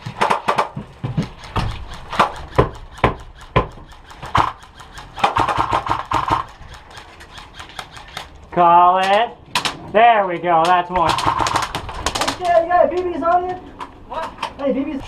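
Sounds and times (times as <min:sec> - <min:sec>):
airsoft rifle firing: 0:00.0 - 0:08.4, 0:10.7 - 0:12.6.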